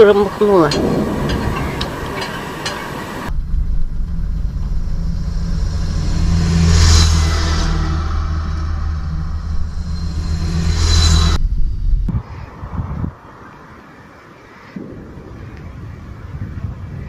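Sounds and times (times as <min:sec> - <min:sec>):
road noise: 0:00.0 - 0:17.0
car engine rumble: 0:00.6 - 0:13.6.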